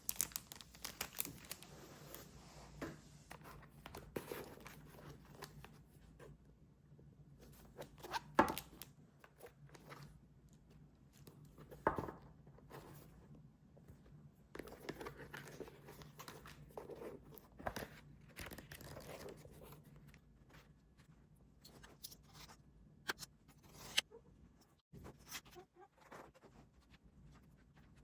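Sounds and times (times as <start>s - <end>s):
rustling crinkling and tearing: 0.0s - 2.8s, 14.9s - 20.1s.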